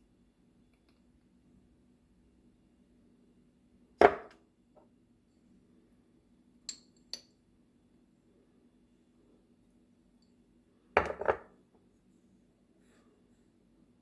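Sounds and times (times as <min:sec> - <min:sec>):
object knocked down on worktop: 0:11.0 - 0:11.5.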